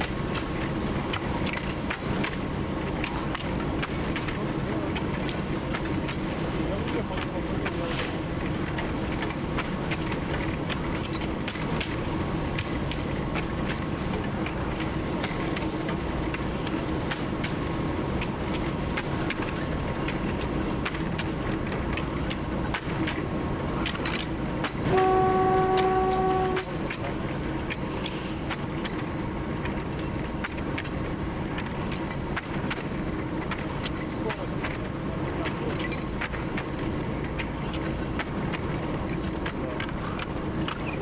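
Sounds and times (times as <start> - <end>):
diesel locomotive running: 0.0 - 41.0
locomotive horn blast: 24.8 - 26.8
running gear clicks and knocks: 28.5 - 41.0.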